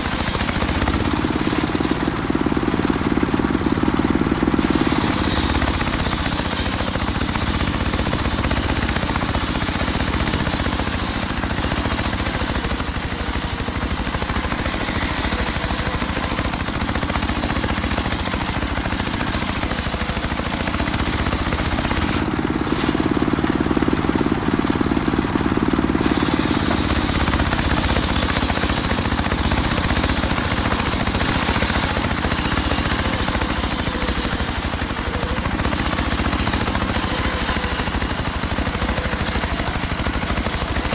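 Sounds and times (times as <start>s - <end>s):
circular saw ripping wood: 4.6s - 23.1s.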